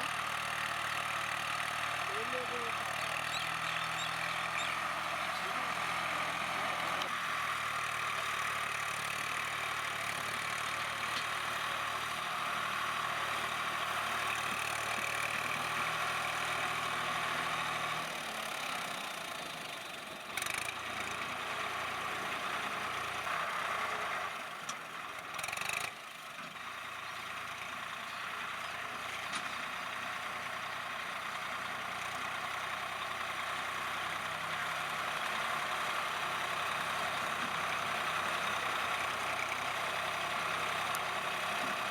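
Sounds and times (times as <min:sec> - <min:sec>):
tractor diesel engine running: 0:00.0 - 0:41.9.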